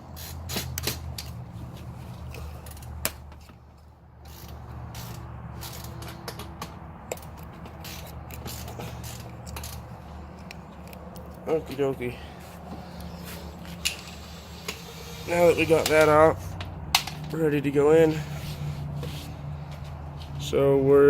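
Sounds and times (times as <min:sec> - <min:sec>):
handling clicks knocks and scrapes: 0:00.0 - 0:12.0, 0:12.6 - 0:14.9.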